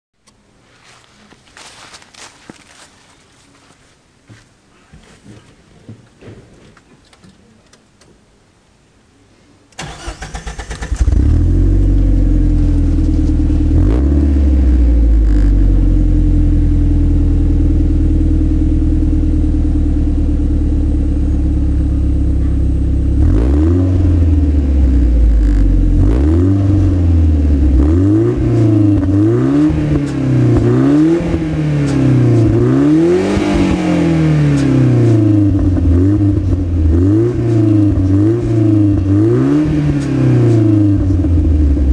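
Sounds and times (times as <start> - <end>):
car engine starting and idling: 9.7 - 41.9.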